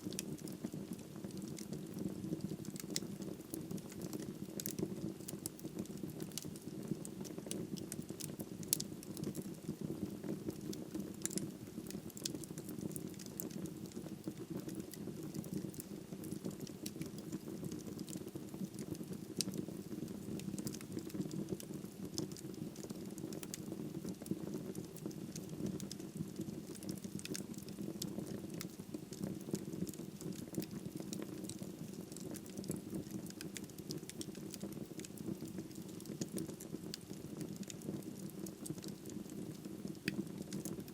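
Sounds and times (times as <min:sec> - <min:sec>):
low rumble of flames: 0:00.0 - 0:40.9
wood fire crackling: 0:00.0 - 0:40.9.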